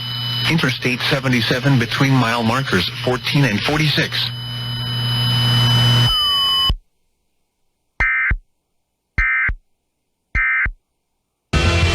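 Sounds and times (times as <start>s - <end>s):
steady electronic hum: 0.0s - 6.9s.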